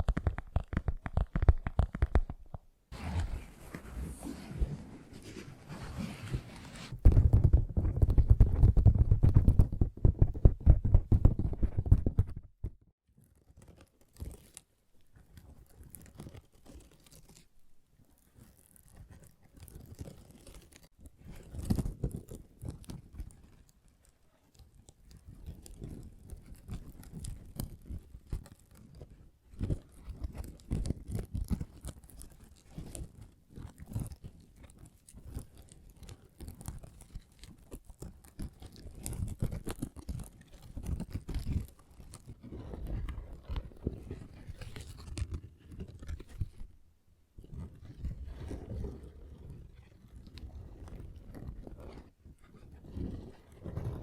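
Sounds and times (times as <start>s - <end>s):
fingertips tapping and scratching: 0.0s - 2.7s, 6.2s - 17.5s, 18.1s - 46.6s.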